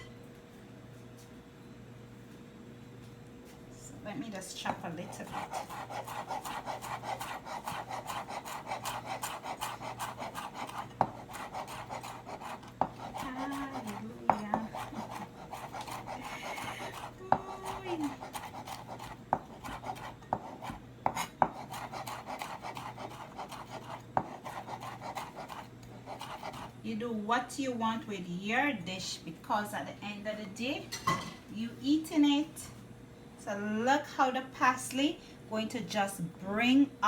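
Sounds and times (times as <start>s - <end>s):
knife chopping on cutting board: 4.7s - 26.7s.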